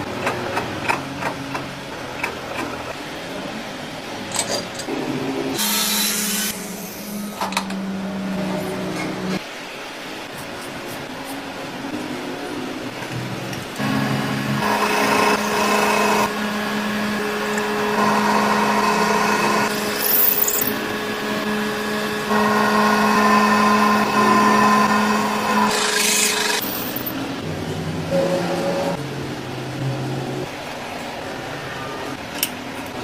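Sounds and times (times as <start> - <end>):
power tool cutting metal: 5.6 - 7.2, 22.2 - 27.0.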